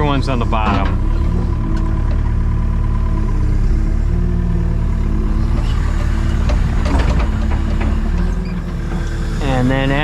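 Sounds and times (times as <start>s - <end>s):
diesel engine running: 0.0s - 10.0s
faint knocks: 5.5s - 9.4s.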